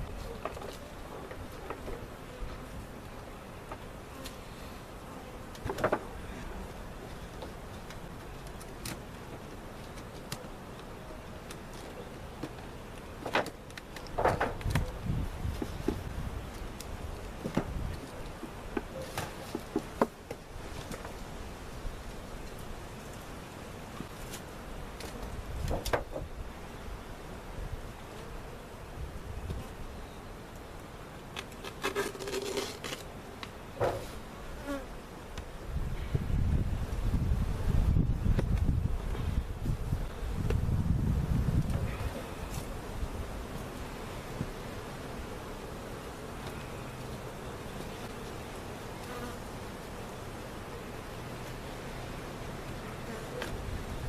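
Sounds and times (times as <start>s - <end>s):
honey bees buzzing: 0.0s - 54.0s
wooden knocks and scrapes: 14.1s - 14.8s, 33.8s - 34.2s
bee flying close by: 36.2s - 50.9s.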